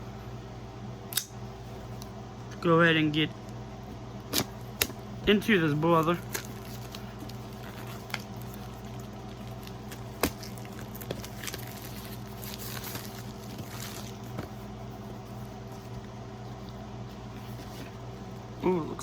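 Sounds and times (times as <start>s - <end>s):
steady low hum: 0.0s - 19.0s
cardboard box rustling: 9.6s - 15.4s.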